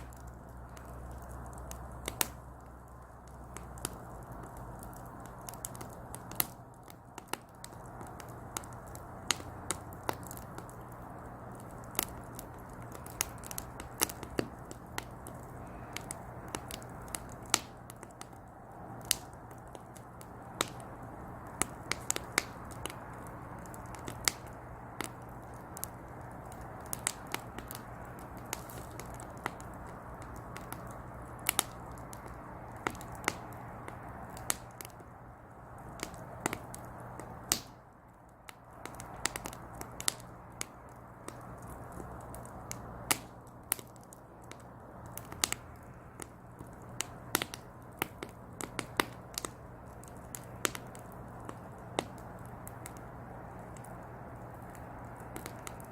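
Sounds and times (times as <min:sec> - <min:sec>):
fire hissing: 0:00.0 - 0:37.8
firewood crackling and popping: 0:00.0 - 0:55.9.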